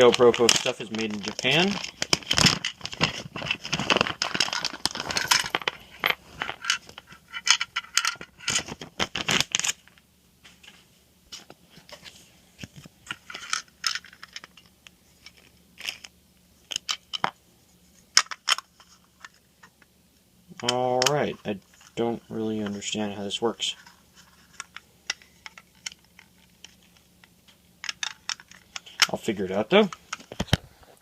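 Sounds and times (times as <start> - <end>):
plastic pieces clicking and tapping: 24.5 - 29.2.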